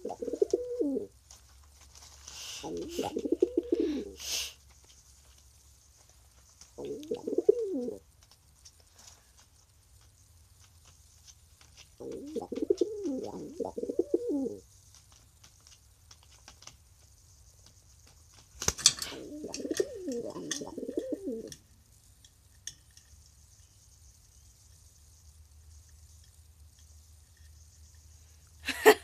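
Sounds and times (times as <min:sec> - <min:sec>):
dove cooing: 0:00.0 - 0:01.2, 0:02.5 - 0:04.2, 0:06.8 - 0:08.1, 0:12.0 - 0:14.6, 0:19.1 - 0:21.6.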